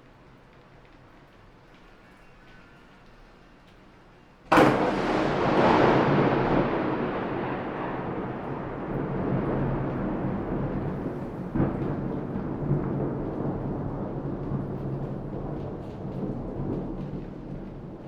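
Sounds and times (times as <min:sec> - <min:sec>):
thunder cracking and rumbling: 0:04.5 - 0:18.0.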